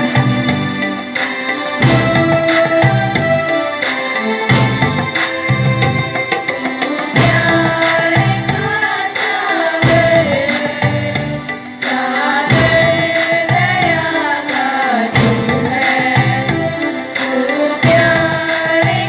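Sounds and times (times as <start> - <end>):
tambourine jingling: 0.0 - 18.9
percussion beat: 0.0 - 19.0
wavering melody: 0.0 - 19.0.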